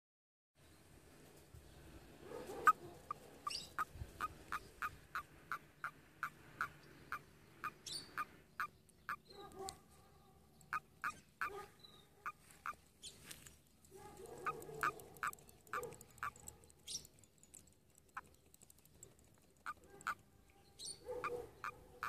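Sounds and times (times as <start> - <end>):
frog calling: 3.4 - 9.2, 14.8 - 16.4.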